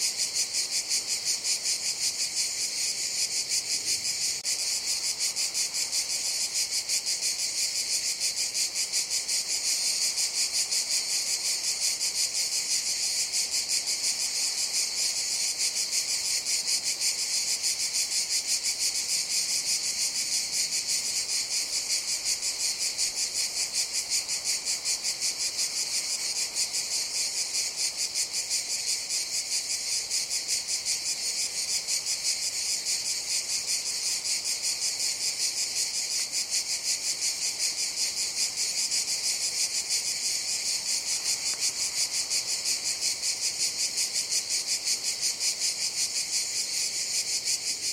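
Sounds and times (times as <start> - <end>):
cicadas buzzing: 0.0 - 47.9.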